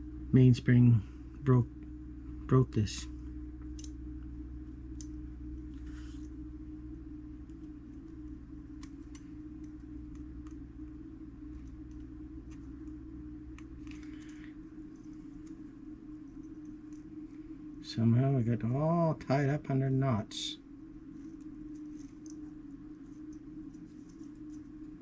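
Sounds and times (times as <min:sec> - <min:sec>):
steady low hum: 0:00.0 - 0:25.0
small clicks and scraping rustles: 0:11.5 - 0:17.5, 0:21.1 - 0:25.0.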